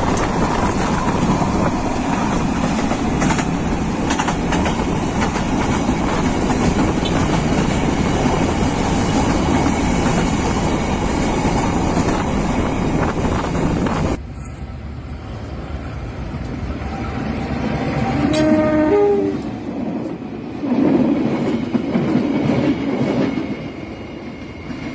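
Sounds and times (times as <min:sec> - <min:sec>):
train wheels clicking over rail joints: 0:00.0 - 0:12.4
freight train rumble: 0:00.0 - 0:24.9.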